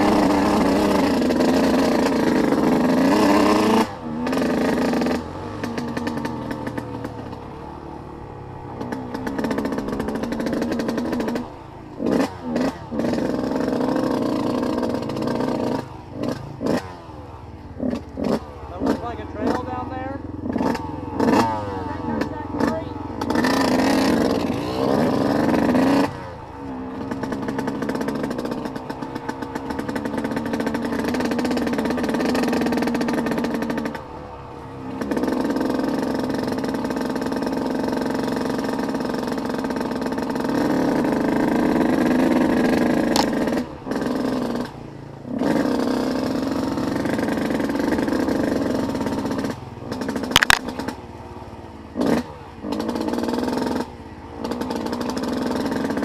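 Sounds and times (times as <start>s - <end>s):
off-road vehicle engine revving: 0.0s - 56.0s.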